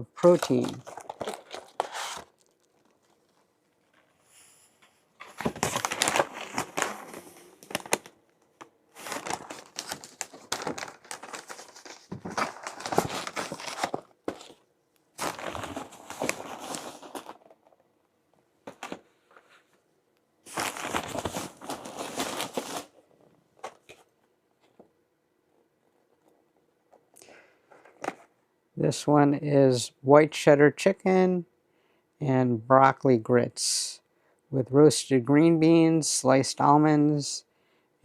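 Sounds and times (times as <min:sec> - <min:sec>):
packaging crinkling and rustling: 0:00.2 - 0:04.2, 0:05.2 - 0:17.8, 0:18.6 - 0:19.1, 0:20.5 - 0:24.9.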